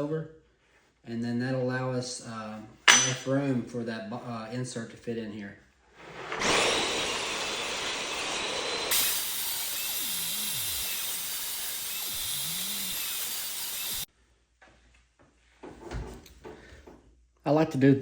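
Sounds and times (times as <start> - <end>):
table saw cutting: 6.1 - 14.1.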